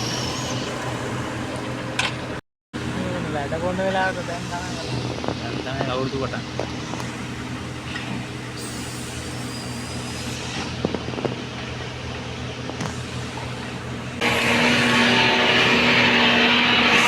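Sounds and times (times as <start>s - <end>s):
diesel engine running and revving: 10.5s - 17.0s.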